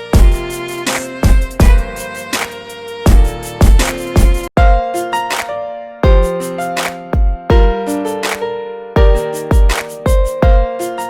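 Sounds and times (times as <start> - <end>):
heavy low drum thumps: 1.2 - 2.0, 3.1 - 4.8.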